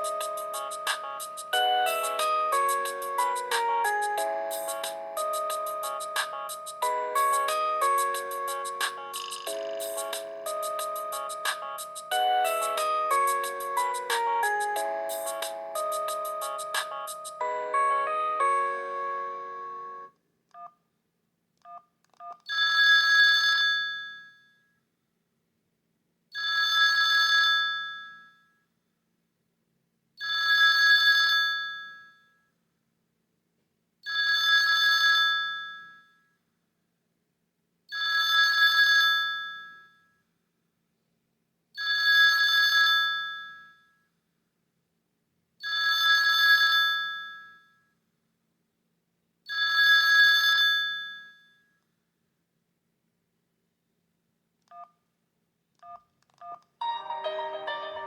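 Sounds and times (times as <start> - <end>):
ringtone melody note: 0.0 - 20.1, 56.8 - 58.0
phone ringtone ringing: 0.0 - 20.7, 56.8 - 58.0.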